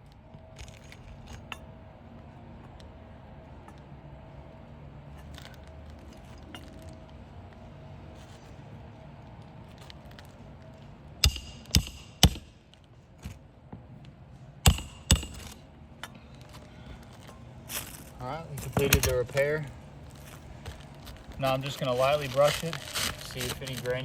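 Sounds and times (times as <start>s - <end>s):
hammer striking roofing nails: 11.2s - 12.5s, 14.6s - 15.6s.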